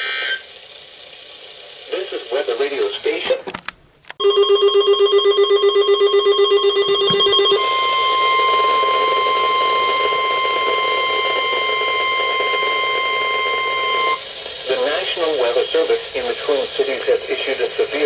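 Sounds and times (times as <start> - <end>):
buzzy pulsing ringing tone: 4.2 - 16.6
steady warning alarm tone: 4.2 - 16.8.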